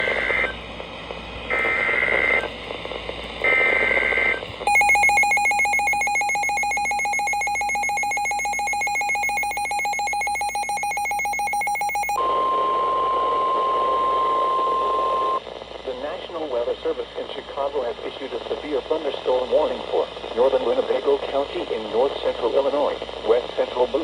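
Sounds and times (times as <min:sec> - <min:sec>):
screechy digital data tones: 0:01.5 - 0:02.5, 0:03.4 - 0:15.4
harsh two-tone attention signal: 0:03.5 - 0:15.4.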